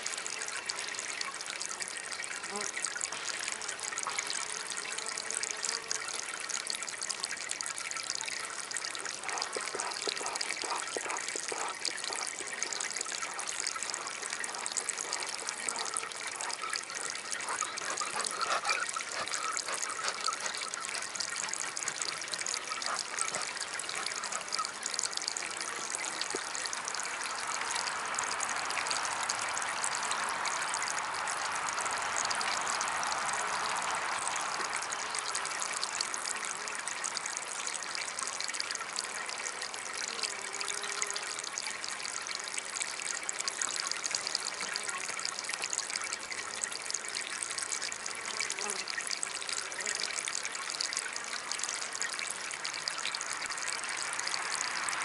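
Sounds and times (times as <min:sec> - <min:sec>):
fountain water trickling: 0:00.0 - 0:55.0.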